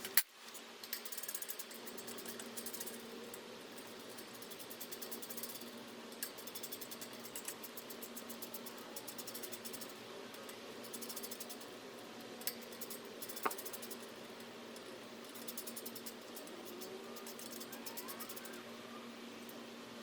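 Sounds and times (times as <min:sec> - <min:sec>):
hand ratchet clicking: 0:00.0 - 0:11.8, 0:12.4 - 0:18.6
sharp metal clinks: 0:00.9 - 0:11.8.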